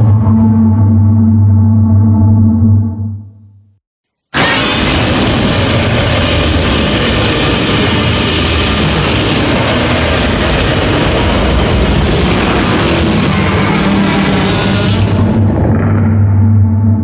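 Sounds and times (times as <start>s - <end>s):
loud rushing rumble: 4.4s - 17.0s.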